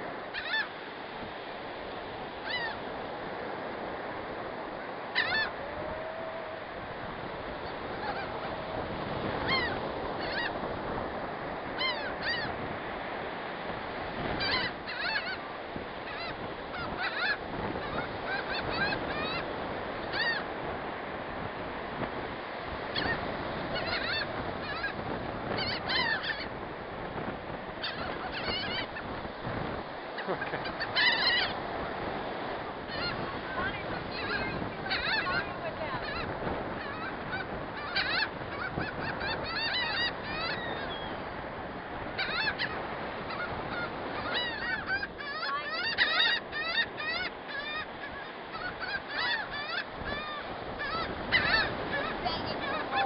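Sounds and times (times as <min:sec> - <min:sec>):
gulls squawking: 0:00.3 - 0:00.7, 0:02.4 - 0:02.8, 0:04.8 - 0:10.7, 0:11.8 - 0:12.6, 0:14.4 - 0:15.4, 0:16.0 - 0:20.4, 0:22.9 - 0:26.6, 0:27.8 - 0:29.1, 0:30.1 - 0:32.0, 0:32.9 - 0:41.3, 0:42.1 - 0:53.0.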